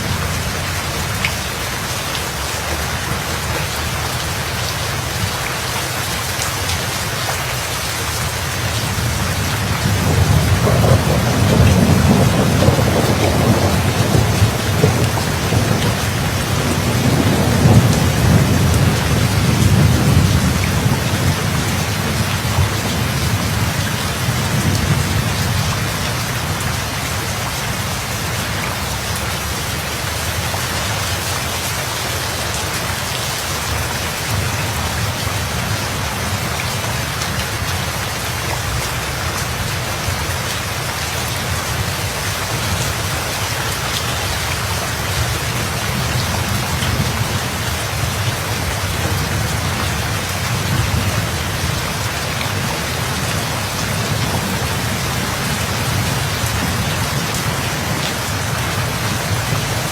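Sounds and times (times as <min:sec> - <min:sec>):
heavy rain falling: 0:00.0 - 0:59.9
rolling thunder: 0:08.9 - 0:27.0.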